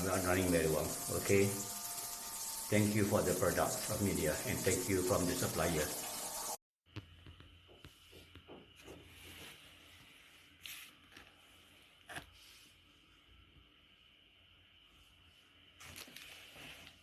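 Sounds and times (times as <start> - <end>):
soft rustles: 15.0 - 17.0.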